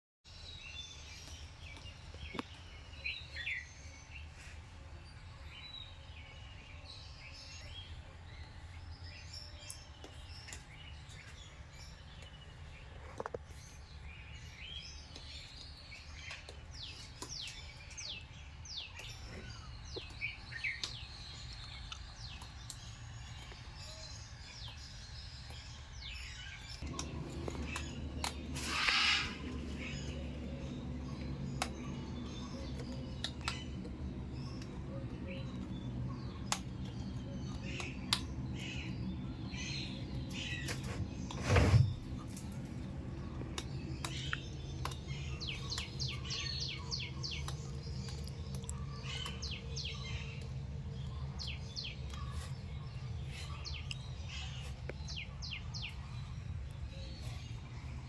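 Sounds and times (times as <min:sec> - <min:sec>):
birds chirping: 0:00.3 - 0:58.0
low hum: 0:26.4 - 0:58.0
rough bird call: 0:26.8 - 0:30.5.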